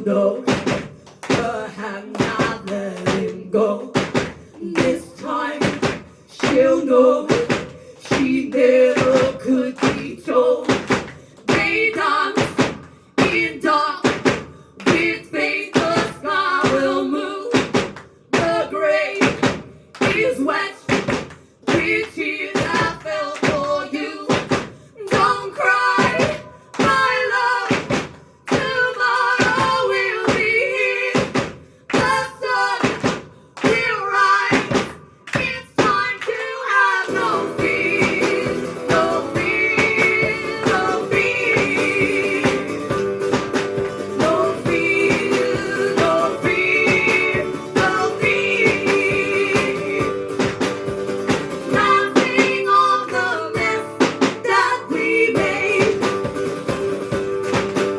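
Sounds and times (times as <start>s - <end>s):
person singing: 0.0s - 0.6s, 1.2s - 4.0s, 4.6s - 10.8s, 11.4s - 17.7s, 21.6s - 33.0s, 33.6s - 56.6s
guitar playing: 37.1s - 51.7s.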